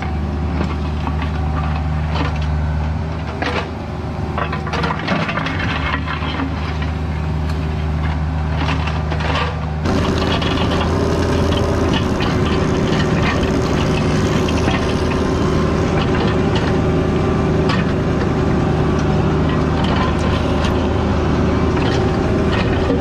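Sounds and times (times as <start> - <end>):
excavator diesel engine running: 0.0 - 23.0
sharp clicks and scrapes: 8.6 - 16.8, 19.5 - 20.8.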